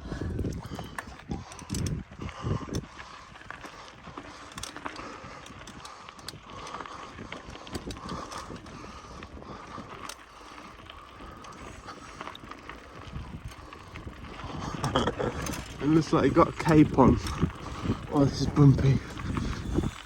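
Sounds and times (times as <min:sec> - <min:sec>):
bicycle rattling on dirt: 0:00.0 - 0:20.0
freewheel ticking: 0:03.6 - 0:20.0.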